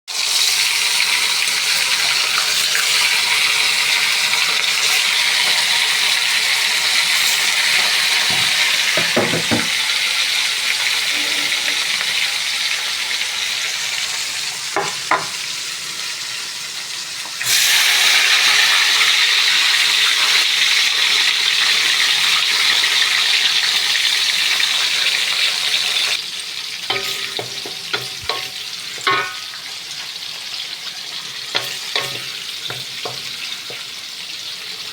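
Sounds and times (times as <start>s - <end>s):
food sizzling in hot oil: 0.1s - 34.9s
utensil knocking against pan: 8.2s - 9.8s, 14.8s - 15.4s, 26.9s - 29.5s, 31.6s - 33.8s.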